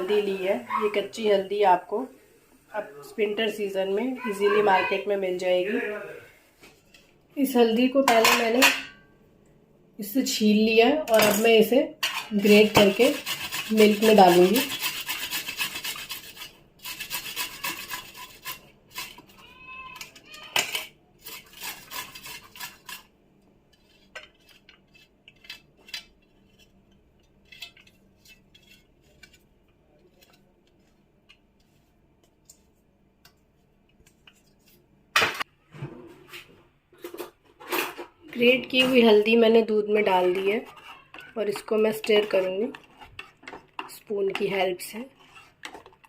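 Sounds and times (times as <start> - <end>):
root rasping on a grater: 12.7 - 19.4, 21.2 - 23.0, 40.3 - 43.9, 45.1 - 46.0.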